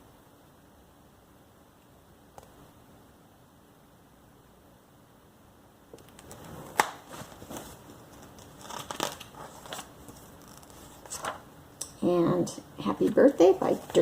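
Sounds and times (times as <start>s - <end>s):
paper snapping: 6.0s - 7.6s, 8.2s - 11.4s
magazine pages rustling: 6.0s - 11.5s, 13.0s - 14.0s.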